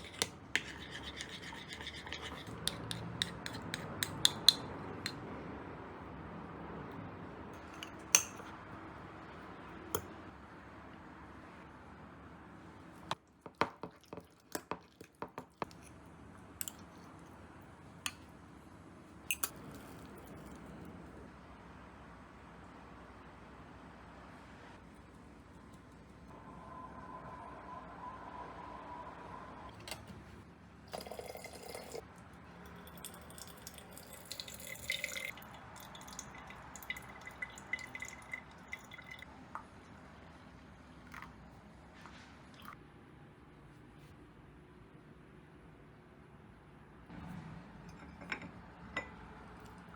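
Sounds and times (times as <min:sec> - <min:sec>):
utensils clicking and tapping: 0:00.0 - 0:05.2
liquid dripping and pouring: 0:30.9 - 0:32.0, 0:32.6 - 0:39.8.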